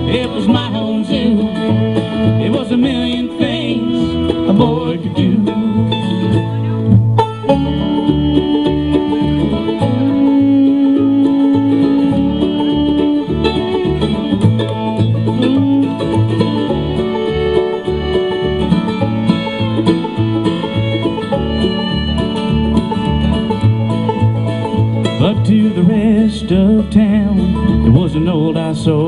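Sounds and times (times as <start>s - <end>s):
bouncing bass line: 0.0s - 29.0s
plucked strings: 0.0s - 29.0s
long held melody note: 7.5s - 18.9s.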